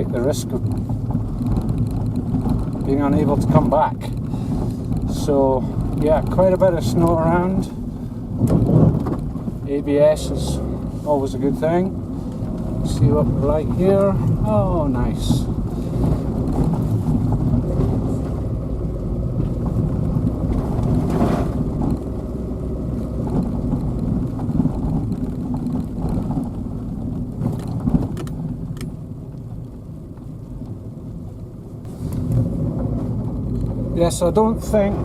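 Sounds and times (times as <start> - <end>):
car driving through snow: 0.0 - 35.0.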